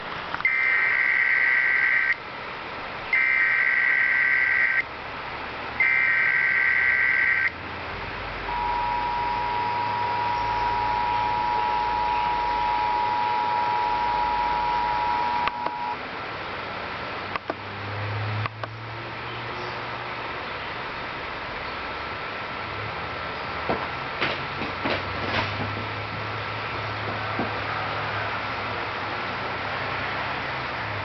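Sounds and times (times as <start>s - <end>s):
digital data tone bursts: 0.4s - 2.2s, 3.1s - 4.8s, 5.8s - 7.6s, 8.4s - 16.0s
two-tone attention signal: 8.4s - 16.0s.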